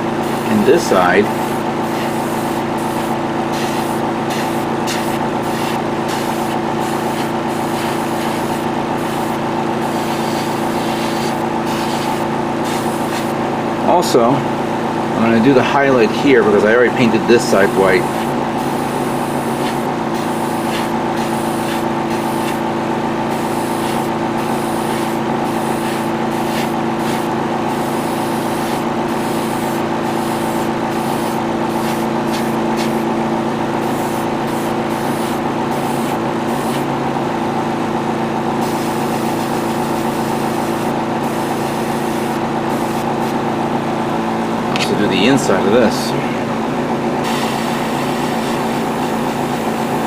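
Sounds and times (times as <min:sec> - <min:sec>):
air compressor humming: 0:00.0 - 0:50.0
airbrush spraying hiss: 0:00.2 - 0:13.4, 0:17.6 - 0:22.7, 0:23.3 - 0:33.1, 0:33.8 - 0:36.9, 0:38.6 - 0:43.4, 0:47.2 - 0:49.9.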